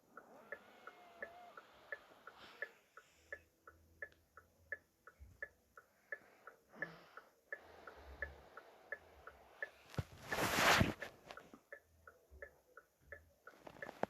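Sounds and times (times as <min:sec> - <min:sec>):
car hazard flasher ticking: 0:00.0 - 0:09.9.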